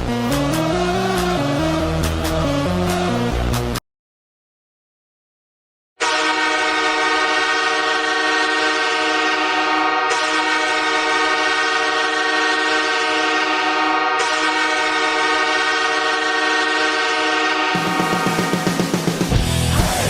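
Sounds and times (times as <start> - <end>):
goal horn blast: 6.0 - 19.1.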